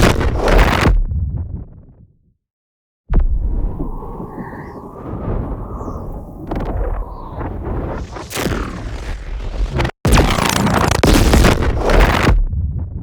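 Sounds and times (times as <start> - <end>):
sudden low boom: 0.0 - 2.3, 3.1 - 8.8, 11.1 - 13.0.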